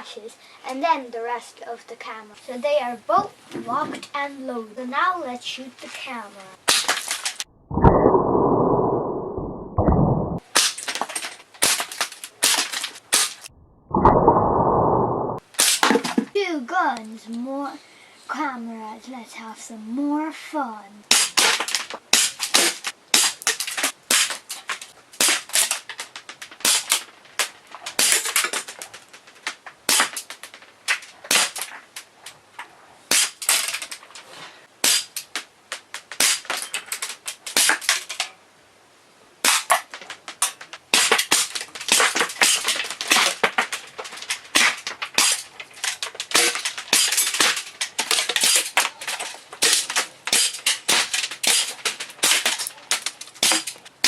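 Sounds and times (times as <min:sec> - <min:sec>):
pellets hitting plastic: 0:06.6 - 0:07.4, 0:10.4 - 0:13.5, 0:15.4 - 0:16.4, 0:21.1 - 0:31.9, 0:39.4 - 0:54.0.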